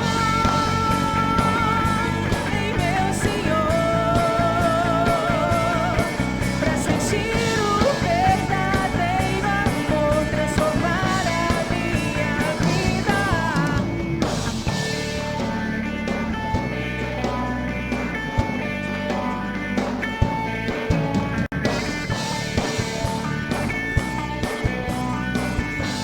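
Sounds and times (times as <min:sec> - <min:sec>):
rock band playing live: 0:00.0 - 0:26.0.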